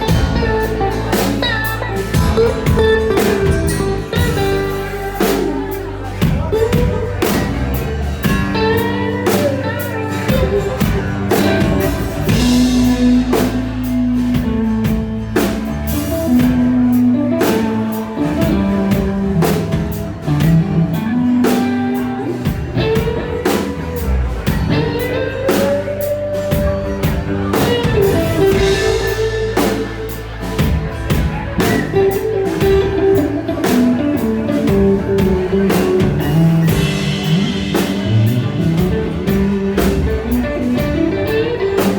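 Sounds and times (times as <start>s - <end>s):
blues guitar lead: 0.0s - 41.9s
drum kit beat: 0.0s - 41.9s.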